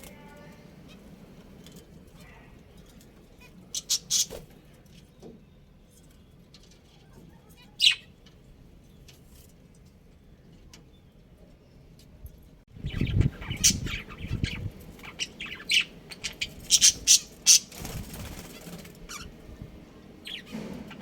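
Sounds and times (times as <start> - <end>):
budgerigars chirping: 3.7 - 4.4, 12.8 - 17.8, 19.1 - 19.3, 20.2 - 21.0.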